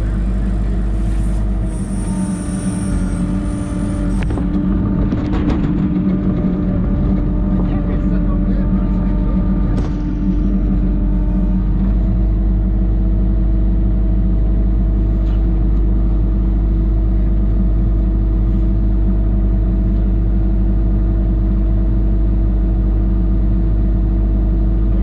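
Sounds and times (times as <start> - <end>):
engine running steadily: 0.0 - 25.0.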